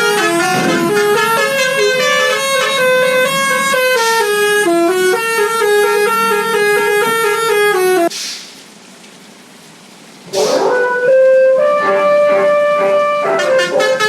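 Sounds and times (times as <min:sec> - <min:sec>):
musical bus air horns: 0:00.0 - 0:08.1, 0:10.3 - 0:14.0.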